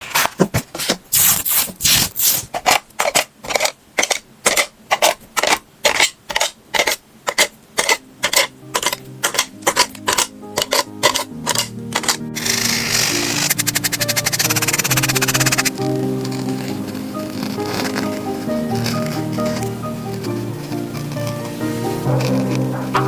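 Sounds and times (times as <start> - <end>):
drawing tool scratching paper: 3.4 - 22.6
quiet music: 7.8 - 23.0.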